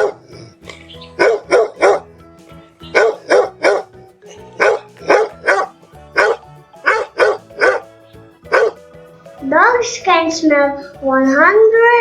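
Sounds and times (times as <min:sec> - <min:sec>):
dog barking: 0:00.0 - 0:00.3, 0:01.1 - 0:02.1, 0:02.8 - 0:08.8.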